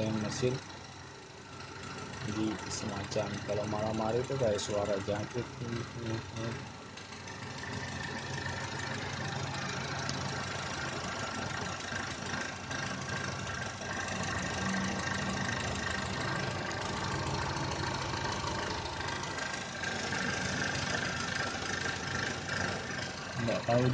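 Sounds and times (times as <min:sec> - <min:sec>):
car engine idling: 0:00.0 - 0:23.9.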